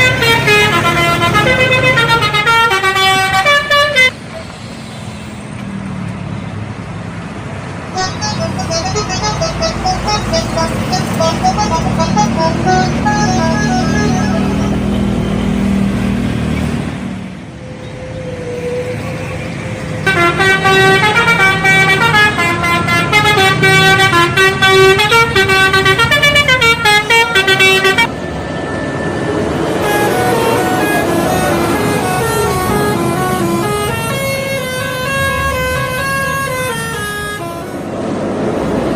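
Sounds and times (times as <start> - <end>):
bus horn playing a tune: 0.0 - 4.2, 7.9 - 15.4, 20.0 - 28.1, 29.7 - 38.0
bus engine running: 0.0 - 38.9.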